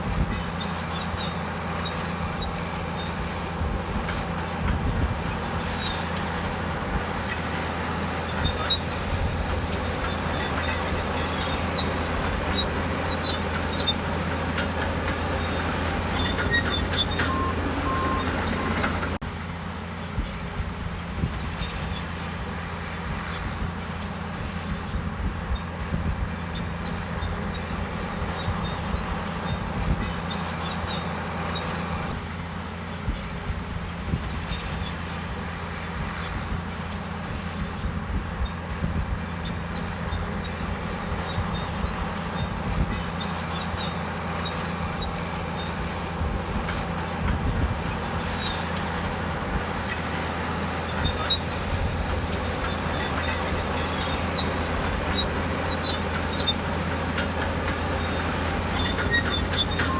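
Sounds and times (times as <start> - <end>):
bulldozer diesel engine running: 0.0 - 59.9
machine clicks and squeaks: 7.1 - 19.2, 39.4 - 59.9.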